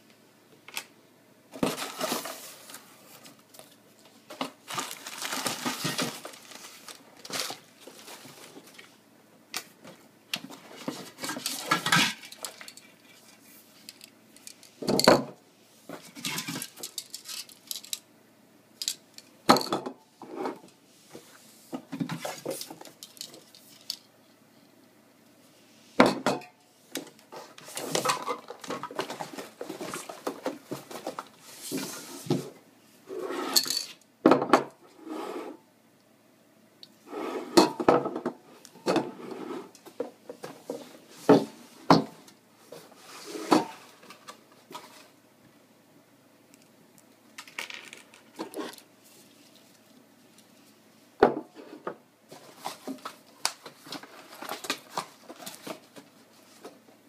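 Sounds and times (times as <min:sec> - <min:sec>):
rustling: 0:01.6 - 0:09.0.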